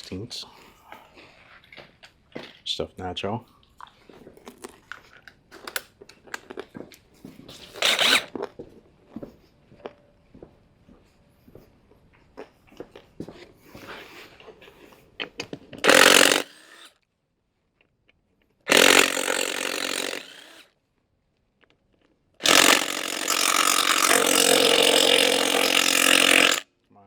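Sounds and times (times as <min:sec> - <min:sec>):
power tool driving a socket: 0:07.7 - 0:08.3, 0:15.8 - 0:16.9, 0:18.7 - 0:20.7, 0:22.4 - 0:26.6.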